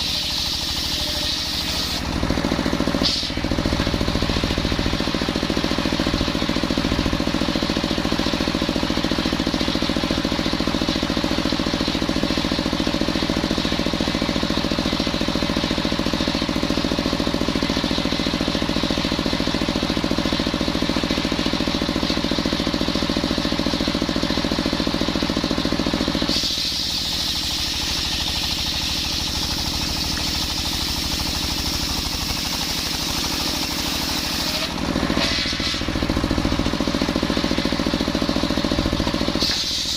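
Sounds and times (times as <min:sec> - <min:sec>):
circular saw cutting wood: 0:00.0 - 0:03.6, 0:26.3 - 0:36.1.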